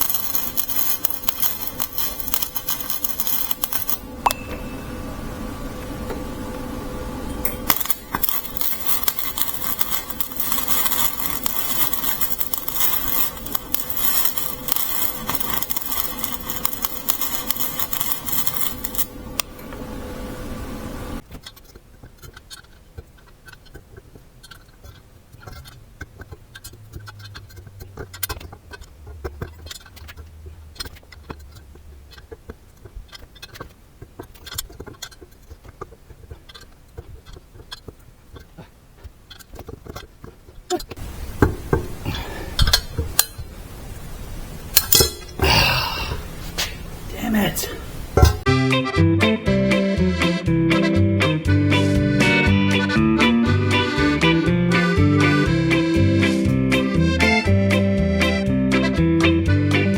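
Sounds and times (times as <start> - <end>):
arc welding crackle: 0.0 - 4.3, 5.6 - 48.5.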